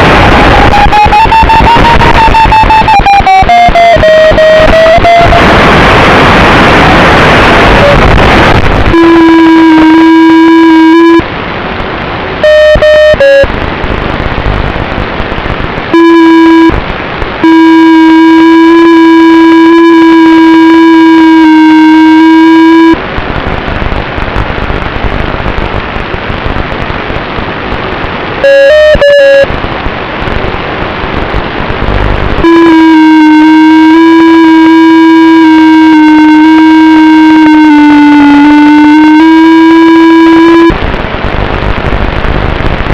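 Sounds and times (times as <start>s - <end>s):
harsh electronic buzzing tone: 0.0s - 11.3s, 12.4s - 13.6s, 15.9s - 23.0s, 28.4s - 29.6s, 31.6s - 42.9s
static hiss: 0.0s - 42.9s.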